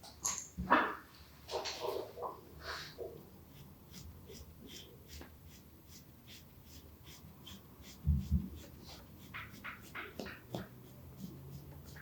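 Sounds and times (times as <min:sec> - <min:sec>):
massage rubbing strokes on skin: 0:03.5 - 0:12.0.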